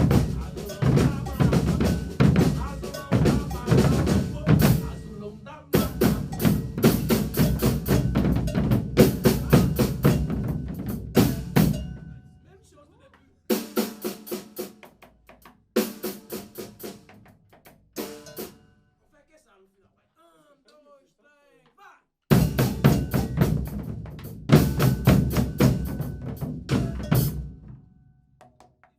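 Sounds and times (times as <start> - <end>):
deep bass drum: 0.0 - 5.1, 5.8 - 12.2, 22.3 - 27.7
rapid drum strokes: 0.0 - 12.3, 13.5 - 18.6, 22.3 - 27.8.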